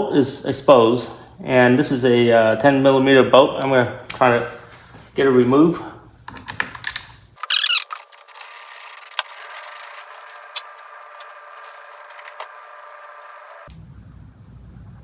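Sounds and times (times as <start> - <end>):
ratchet wrench clicking: 7.5 - 10.0.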